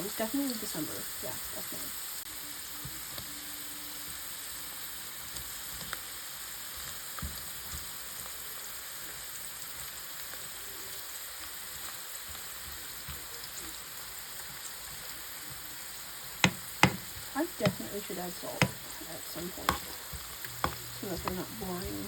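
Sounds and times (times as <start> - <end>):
fries sizzling in hot oil: 0.0 - 22.0
soft knocks: 16.4 - 17.9, 18.6 - 22.0.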